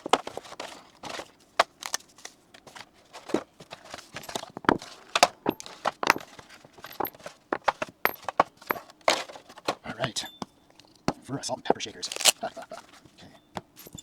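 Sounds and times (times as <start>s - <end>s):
packaging rustling: 0.0s - 9.9s, 11.9s - 13.2s
packaging clicks and taps: 0.0s - 14.0s.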